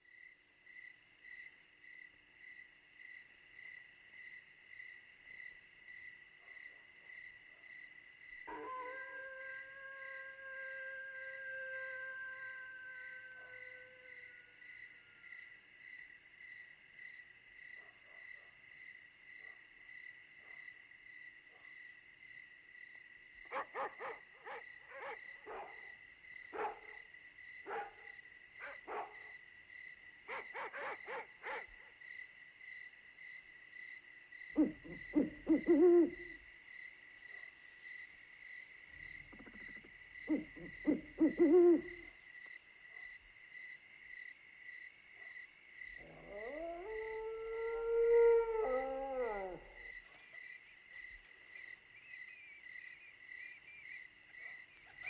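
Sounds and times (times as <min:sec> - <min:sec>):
crickets chirping: 0:00.0 - 0:55.0
owl hooting: 0:34.6 - 0:36.4, 0:40.3 - 0:42.1.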